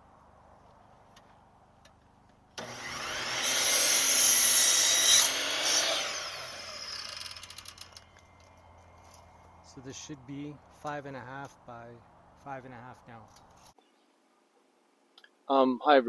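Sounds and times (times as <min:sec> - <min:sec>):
electric power saw cutting wood: 0:02.6 - 0:08.3.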